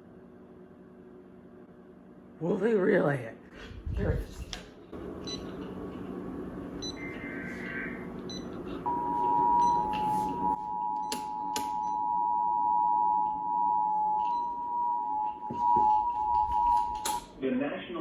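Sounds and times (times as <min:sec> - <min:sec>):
two-tone alert signal: 0:06.8 - 0:17.2.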